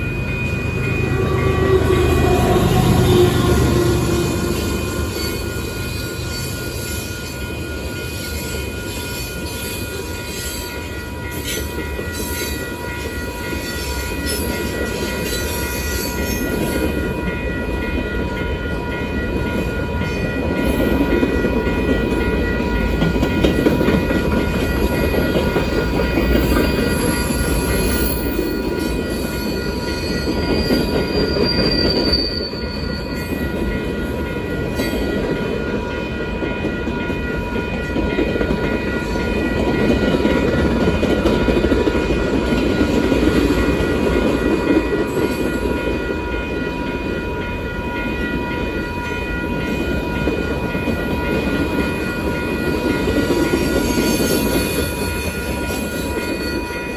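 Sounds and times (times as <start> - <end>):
freight train wheels rumbling: 0.0 - 56.9
steady high tones: 0.0 - 56.9
brief high squeal: 30.6 - 33.3.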